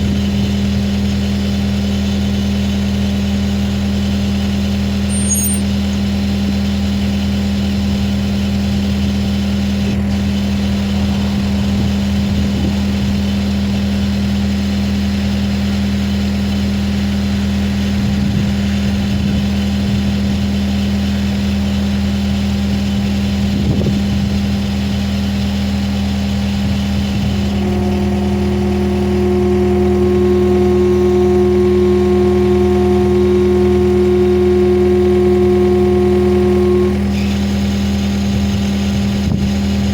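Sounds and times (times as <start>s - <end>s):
diesel engine idling: 0.0s - 39.9s
high-pitched whine: 5.1s - 6.0s.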